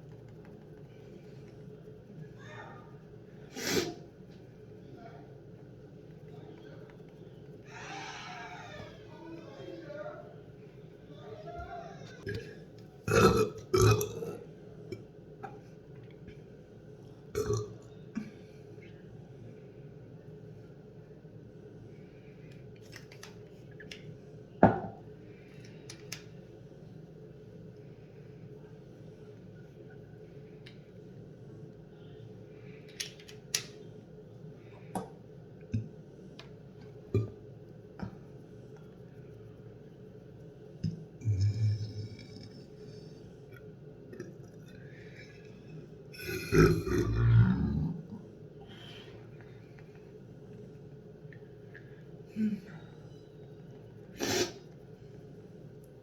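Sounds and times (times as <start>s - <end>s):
person burping: 12.2s - 14.5s, 17.4s - 17.8s, 41.2s - 42.6s, 46.2s - 48.1s.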